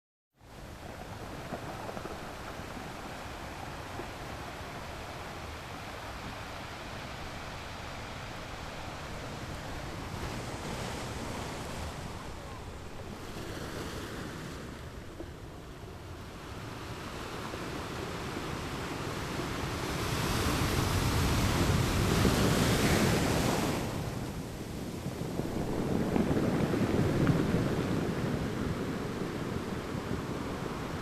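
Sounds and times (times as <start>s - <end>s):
ocean surf washing in: 0.4s - 31.0s.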